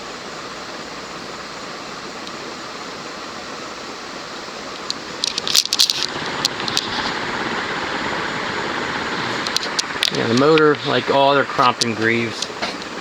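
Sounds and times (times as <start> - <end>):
ceiling fan blades rushing air: 0.0 - 13.0
sharp clicks and rattles: 4.7 - 13.0.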